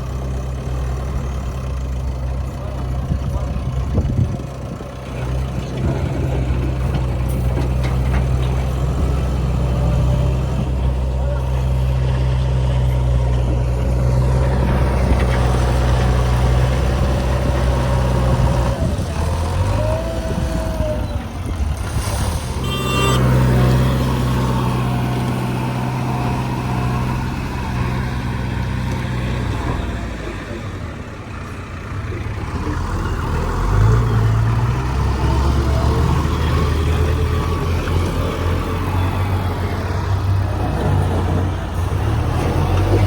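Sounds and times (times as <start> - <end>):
construction machinery diesel engines: 0.0 - 43.0
brief high-pitched tone: 22.6 - 24.0.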